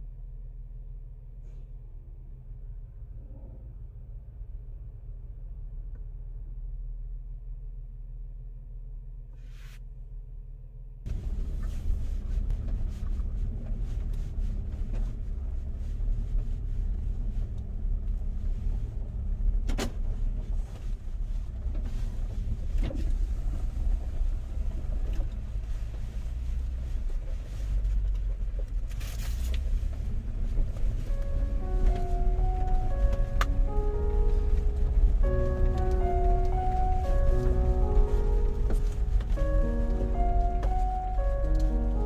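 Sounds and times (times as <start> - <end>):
engine and tyres rumbling: 0.0 - 42.0
low hum: 29.4 - 42.0.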